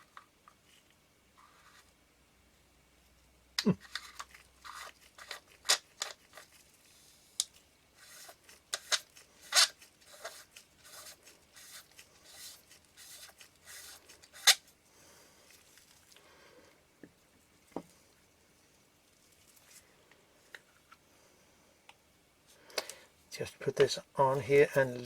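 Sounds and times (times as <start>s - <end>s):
light scraping and rustling: 0.0s - 2.0s.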